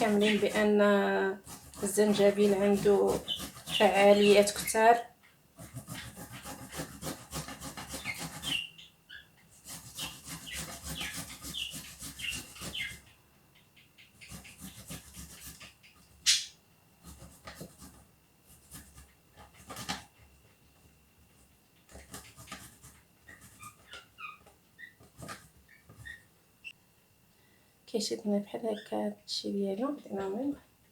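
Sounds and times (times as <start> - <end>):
ginger grated on a hand grater: 0.0 - 5.0, 5.6 - 8.7, 9.5 - 13.0, 14.2 - 15.7, 21.9 - 23.8.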